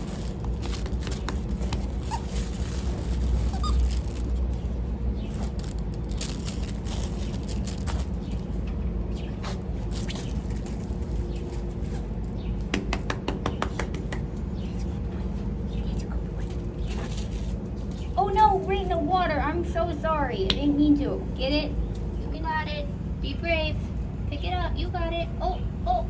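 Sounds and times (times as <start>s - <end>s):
high squeaks: 1.8s - 4.6s.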